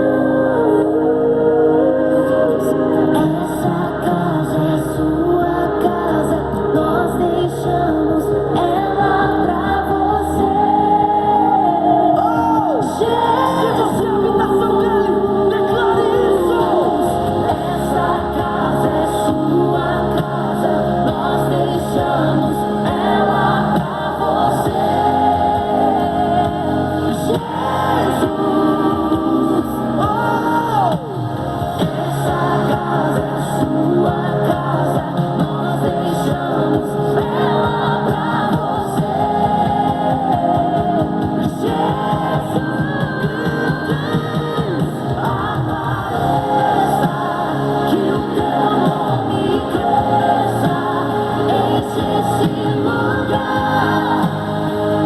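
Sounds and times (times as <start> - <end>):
musical accompaniment: 0.0 - 55.0
voices singing: 0.0 - 55.0.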